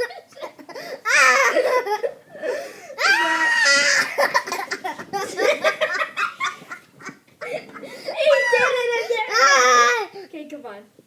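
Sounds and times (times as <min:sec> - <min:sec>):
people laughing: 0:03.3 - 0:08.6.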